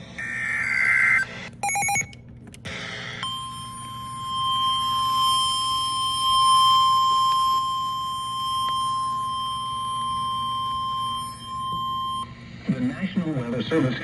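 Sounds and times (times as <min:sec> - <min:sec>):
steady high-pitched alarm beep: 0:00.2 - 0:02.2, 0:03.2 - 0:12.4.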